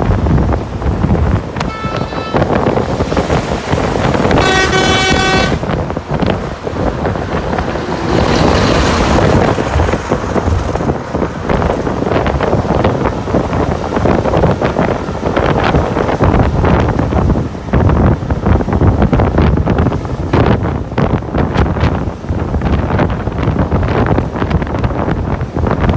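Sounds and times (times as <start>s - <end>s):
wind noise on microphone: 0.0s - 25.9s
horn sounding: 1.5s - 3.2s, 3.9s - 5.9s.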